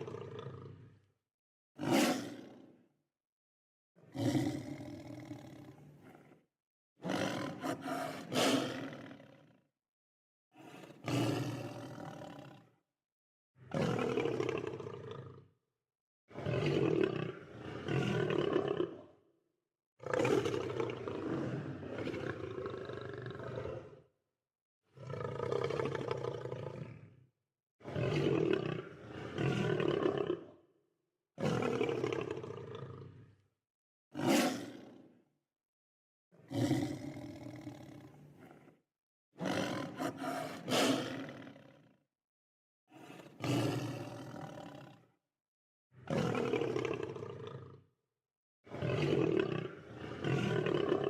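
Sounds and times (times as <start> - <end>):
lion roaring: 0.0 - 1.0, 4.1 - 6.4, 7.0 - 9.3, 20.0 - 24.0, 25.0 - 27.1, 34.2 - 34.9, 36.5 - 38.7, 39.4 - 41.8, 43.0 - 45.0, 46.1 - 47.8, 49.4 - 51.0.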